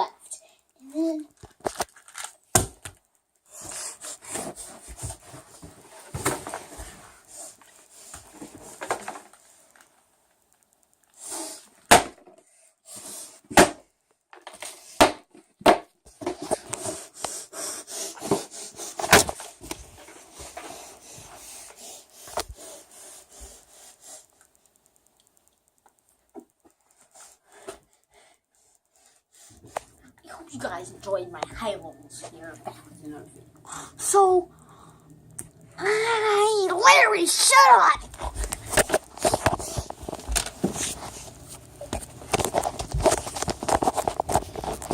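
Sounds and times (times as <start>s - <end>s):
plastic puzzle cube twisting and clicking: 1.4s - 3.3s.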